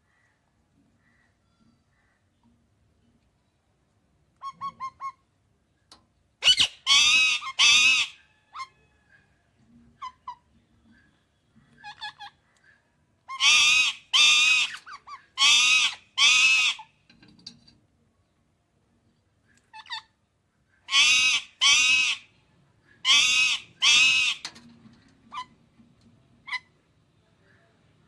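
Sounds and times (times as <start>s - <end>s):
parrot giving loud calls: 6.4s - 8.8s, 13.3s - 16.9s, 20.9s - 22.3s, 23.0s - 24.4s.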